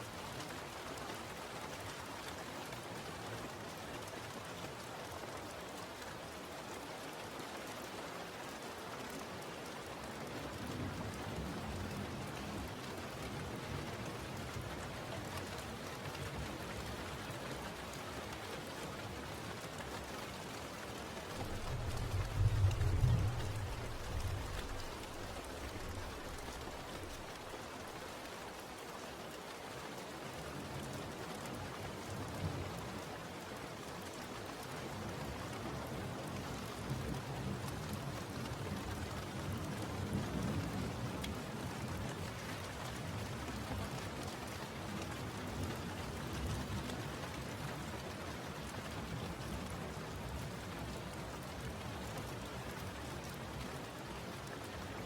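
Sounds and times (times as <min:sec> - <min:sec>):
steady rain falling: 0:00.0 - 0:55.0
distant thunder rumble: 0:21.4 - 0:27.6.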